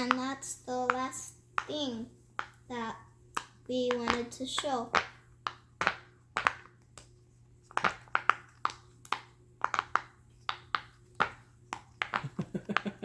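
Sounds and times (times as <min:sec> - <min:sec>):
fidget toy bubbles popping: 0:07.7 - 0:13.0.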